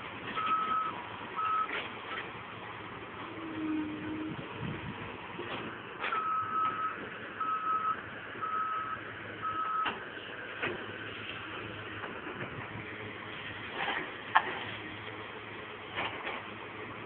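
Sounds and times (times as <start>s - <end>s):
diesel engine running: 0.0s - 17.0s
alarm beeping: 6.1s - 10.0s.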